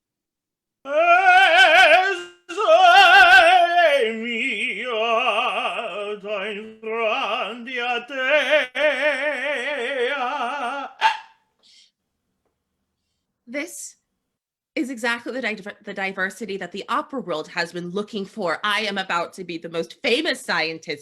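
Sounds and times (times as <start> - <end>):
person singing mock-operatic: 0.9 - 11.4.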